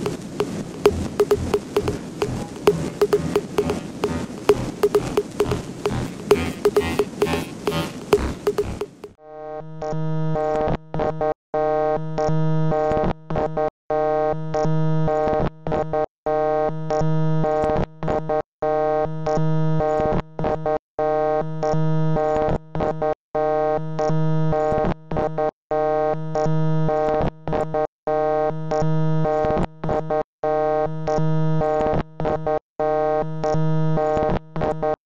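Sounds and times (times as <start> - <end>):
harsh electronic buzzing tone: 0.0 - 9.1.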